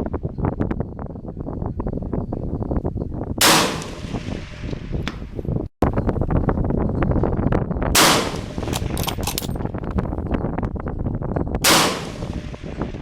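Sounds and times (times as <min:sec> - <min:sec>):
wind buffeting microphone: 0:00.0 - 0:13.0
rifle shots: 0:03.4 - 0:05.0, 0:08.0 - 0:09.5, 0:11.6 - 0:13.0
small metallic clicks: 0:08.4 - 0:11.4.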